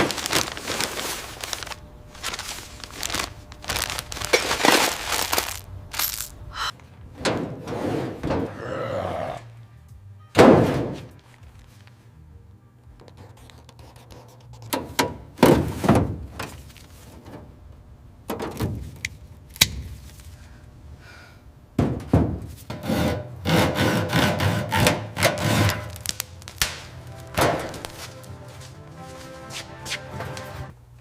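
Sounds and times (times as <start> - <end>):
hand tool scraping strokes: 22.7 - 26.1.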